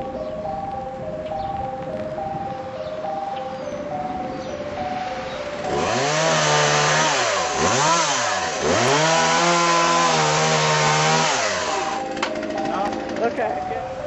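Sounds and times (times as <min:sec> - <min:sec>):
stepped jingle melody: 0:00.0 - 0:14.0
chainsaw running: 0:05.6 - 0:14.0.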